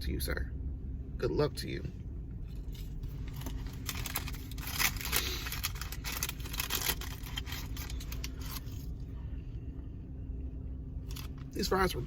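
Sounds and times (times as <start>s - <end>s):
steady low rumble: 0.0s - 12.0s
paper packaging crinkling: 2.7s - 8.9s.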